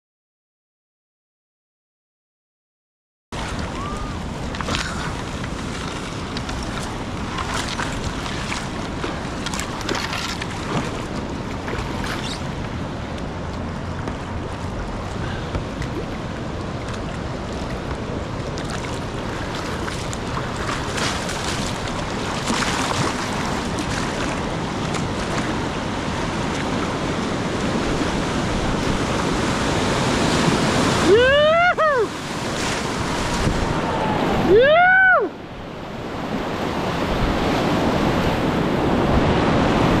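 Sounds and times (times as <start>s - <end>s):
sharp water splashes: 3.4s - 12.5s, 18.5s - 27.0s
river whitewater rushing: 3.4s - 40.0s
wind buffeting microphone: 32.0s - 34.6s.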